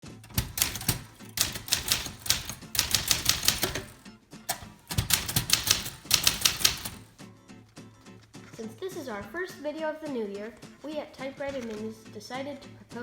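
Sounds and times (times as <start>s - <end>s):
manual typewriter keystrokes: 0.0s - 7.1s.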